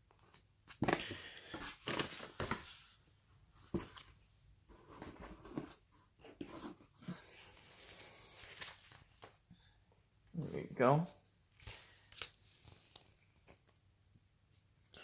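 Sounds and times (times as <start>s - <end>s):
cardboard box rustling and scraping: 4.7s - 8.1s.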